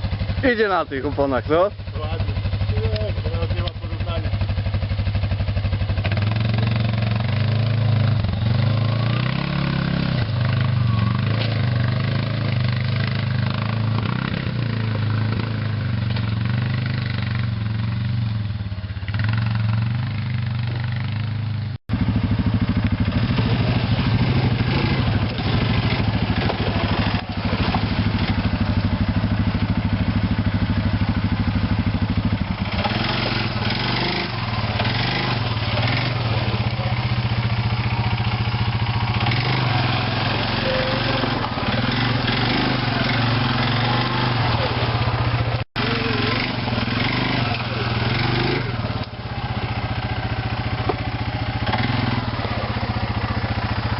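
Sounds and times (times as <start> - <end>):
engine idling: 0.0 - 9.6, 21.6 - 53.9.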